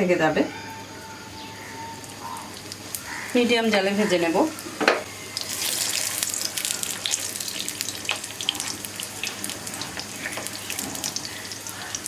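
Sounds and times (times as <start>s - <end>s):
oil sizzling in a pan: 2.0s - 12.0s.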